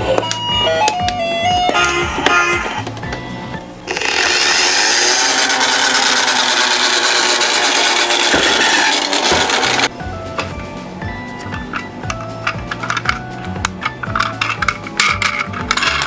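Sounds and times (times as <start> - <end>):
toy car wheels rolling: 3.9 - 9.9, 12.4 - 16.0.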